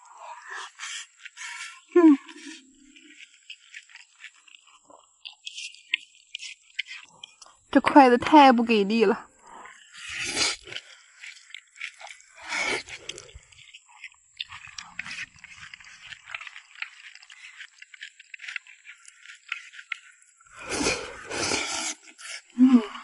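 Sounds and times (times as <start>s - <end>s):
person chewing: 0.0s - 7.7s, 9.4s - 23.0s
chopsticks clicking and scraping: 1.2s - 7.6s, 12.8s - 22.5s.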